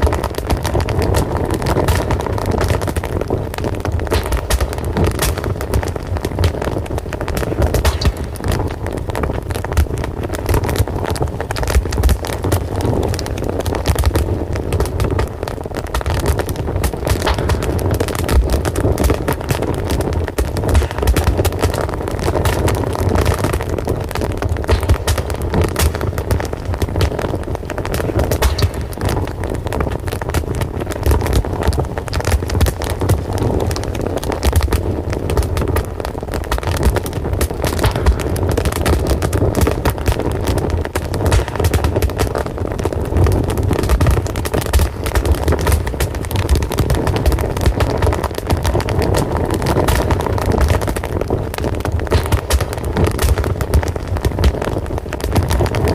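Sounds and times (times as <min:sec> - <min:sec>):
fire crackling: 0:00.0 - 0:55.9.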